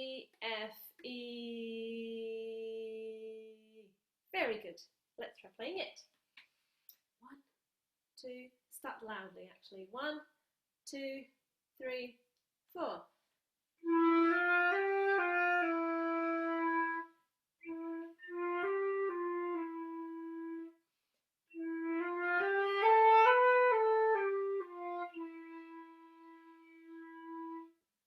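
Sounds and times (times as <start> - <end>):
solo flute melody: 13.8 - 20.8, 21.5 - 27.8.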